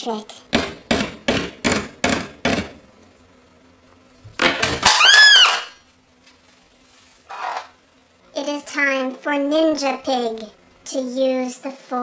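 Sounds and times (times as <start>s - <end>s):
noisy burst with high squeal: 4.8s - 5.8s.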